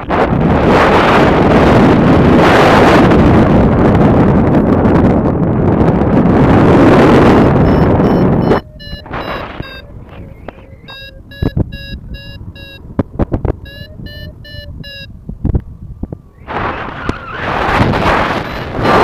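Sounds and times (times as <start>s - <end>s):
wind rushing over microphone: 0.0s - 19.0s
variometer beeping in short pulses: 7.6s - 12.8s, 13.6s - 15.1s, 18.2s - 19.0s.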